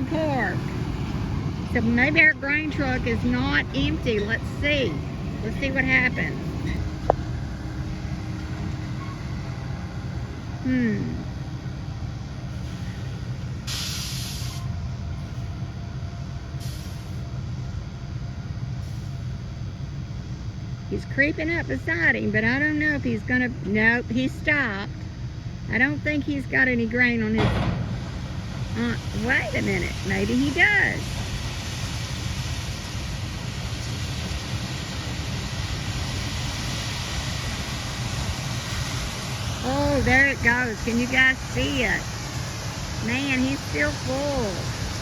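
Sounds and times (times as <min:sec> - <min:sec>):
even hiss: 0:00.0 - 0:15.6, 0:16.4 - 0:17.3, 0:27.8 - 0:45.0
truck engines idling: 0:00.0 - 0:45.0
air brake hiss: 0:12.5 - 0:15.5, 0:16.6 - 0:17.2, 0:18.8 - 0:19.3.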